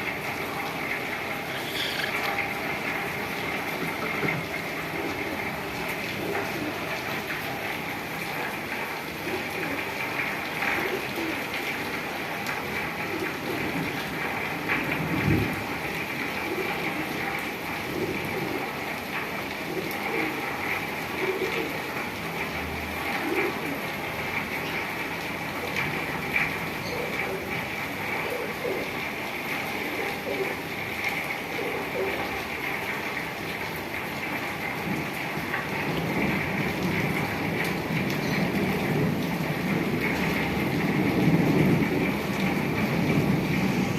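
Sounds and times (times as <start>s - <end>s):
steady rain falling: 0.0s - 43.9s.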